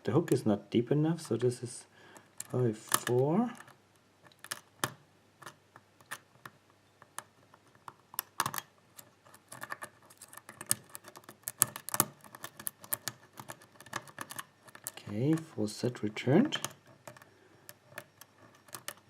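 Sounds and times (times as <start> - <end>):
lock pick clicking in a lock: 2.3 - 8.7, 9.3 - 15.5, 16.5 - 19.0.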